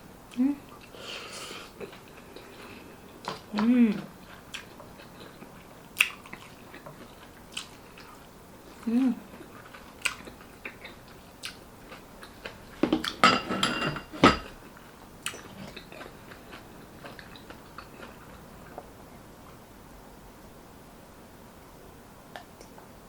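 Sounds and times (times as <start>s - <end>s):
cutlery clinking on a dish: 12.9s - 14.5s.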